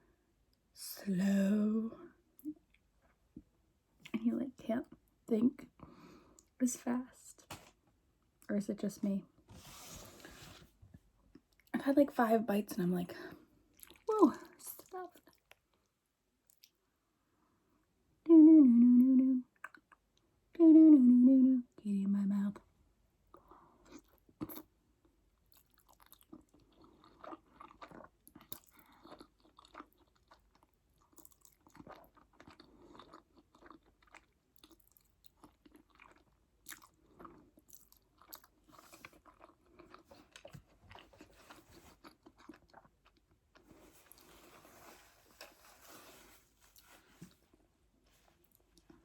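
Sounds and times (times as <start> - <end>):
person chewing food: 13.7 - 14.1, 15.2 - 16.8, 19.6 - 20.2, 23.3 - 24.7, 25.4 - 47.4.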